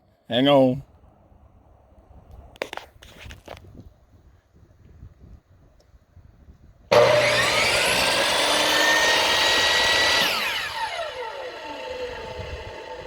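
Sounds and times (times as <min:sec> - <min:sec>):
power tool motor whine: 0:06.9 - 0:13.0.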